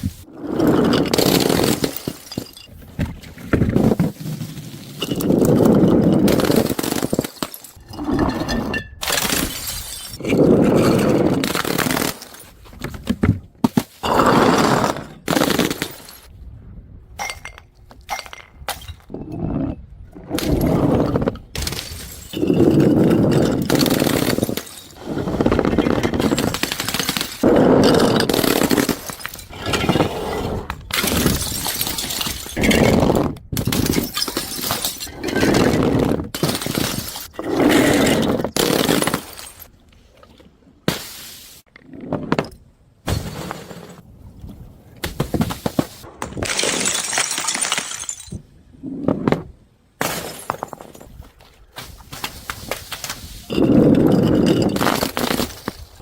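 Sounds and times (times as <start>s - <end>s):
small glass pieces tinkling: 1.8s - 2.7s, 8.7s - 10.2s, 31.3s - 32.6s
glass shattering: 6.3s - 10.2s, 31.0s - 32.9s, 33.6s - 35.7s, 46.4s - 48.4s.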